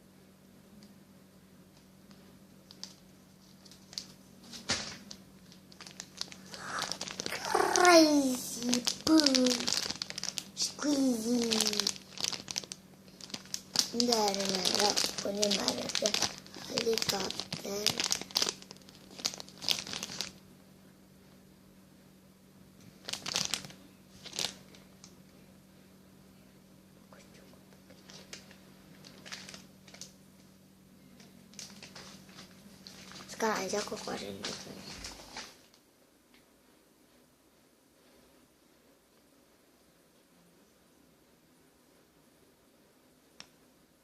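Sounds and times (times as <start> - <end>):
plastic packaging crinkling: 2.6 - 20.4, 22.9 - 25.0, 28.0 - 30.2, 31.5 - 35.8.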